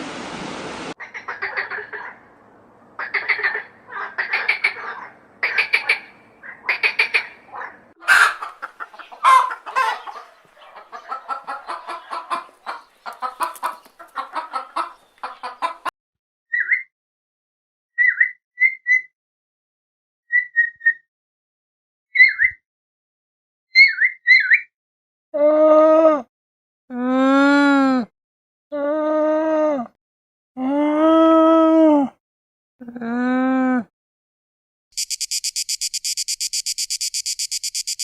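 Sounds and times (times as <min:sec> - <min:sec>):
animal calls: 0:03.0 - 0:15.9.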